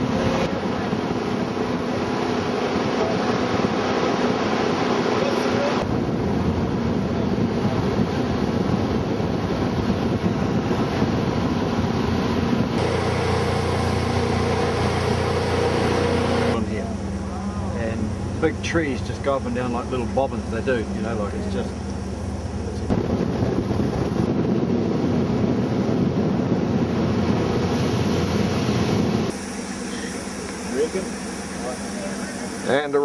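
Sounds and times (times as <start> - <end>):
wind buffeting microphone: 0.0 - 29.3
boat engine drone: 0.0 - 33.0.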